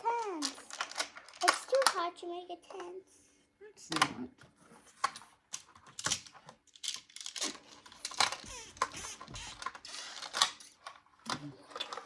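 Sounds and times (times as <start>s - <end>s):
plastic tiles clicking together: 0.2s - 2.0s.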